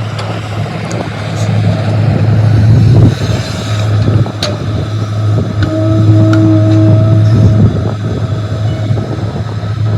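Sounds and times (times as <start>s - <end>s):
high whine: 4.0s - 9.9s.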